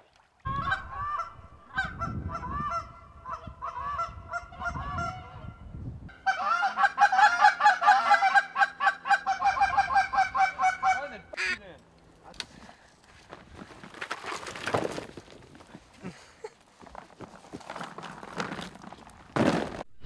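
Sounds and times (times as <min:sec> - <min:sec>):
geese honking: 0:00.5 - 0:11.6.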